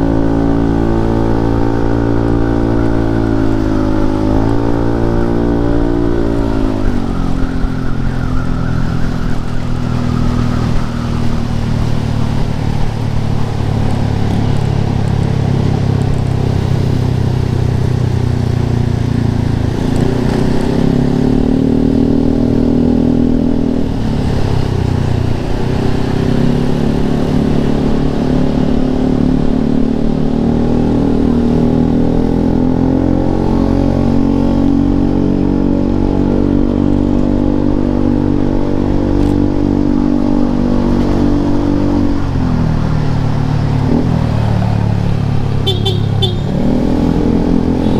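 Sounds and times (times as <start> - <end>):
scooter engine revving: 37.8 - 47.9.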